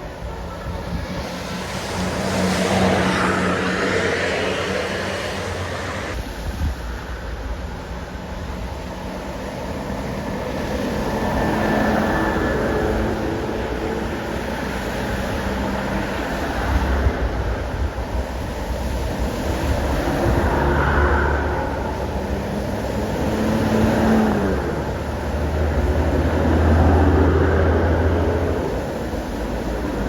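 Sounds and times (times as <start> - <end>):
low engine drone: 0.0 - 6.3
water wash and tyre noise: 0.0 - 30.0.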